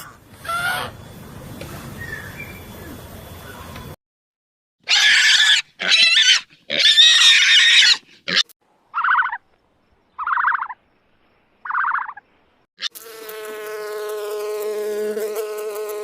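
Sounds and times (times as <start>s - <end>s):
pig squealing: 0.4s - 1.0s, 4.8s - 9.4s, 10.2s - 10.8s, 11.7s - 12.2s.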